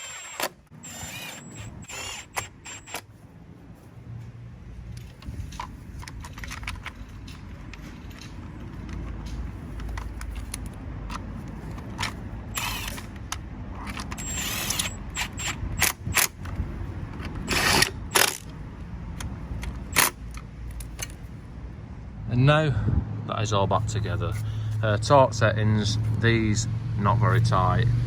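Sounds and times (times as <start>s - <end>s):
ratchet clicking: 0.0s - 3.1s, 9.8s - 16.6s, 17.2s - 18.5s.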